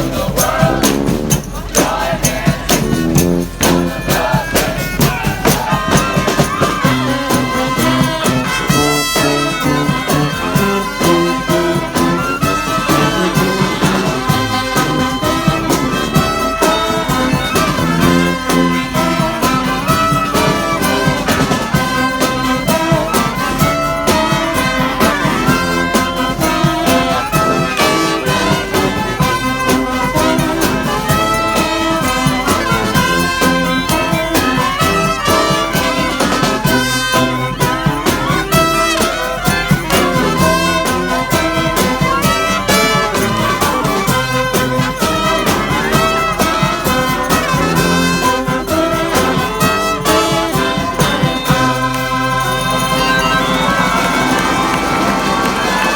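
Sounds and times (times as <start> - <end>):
brass band playing: 0.0 - 55.9
steady drum beat: 0.0 - 55.9.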